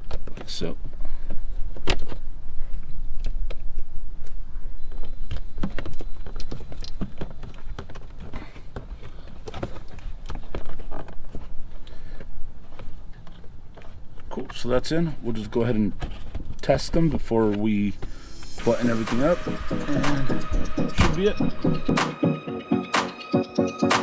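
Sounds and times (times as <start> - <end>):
rustling handling noise: 5.0 - 18.2.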